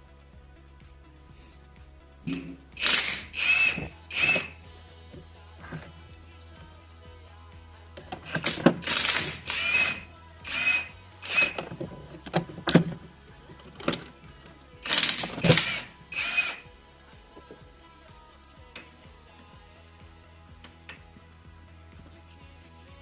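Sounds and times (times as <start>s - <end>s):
impact wrench rattling: 2.2s - 6.3s, 8.0s - 17.7s
sharp clicks: 2.3s - 4.6s, 8.0s - 13.0s, 14.8s - 16.6s.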